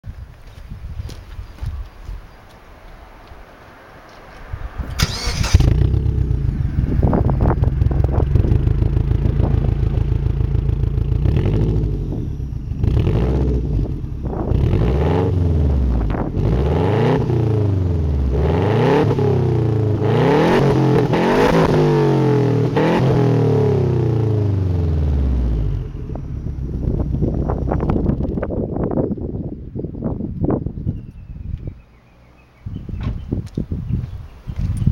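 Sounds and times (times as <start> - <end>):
engine starting: 4.9 - 6.2
motorcycle engine revving: 4.9 - 28.6.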